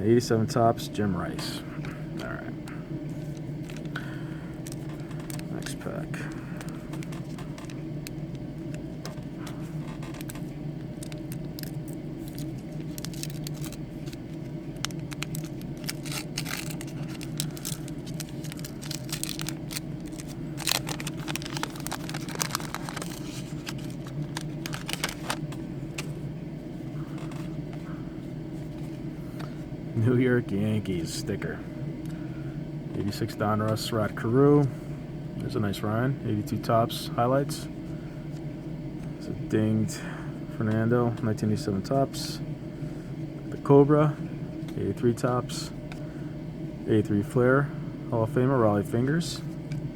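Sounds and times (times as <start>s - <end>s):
steady low hum: 0.0s - 49.9s
wax paper wrapper crinkling: 3.1s - 26.2s.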